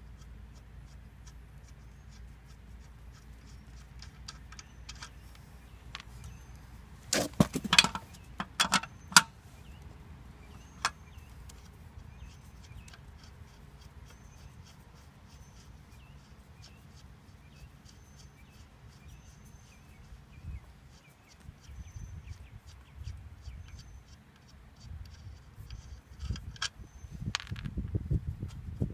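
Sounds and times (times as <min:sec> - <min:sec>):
lug wrench clanking metal: 0:07.1 - 0:09.4.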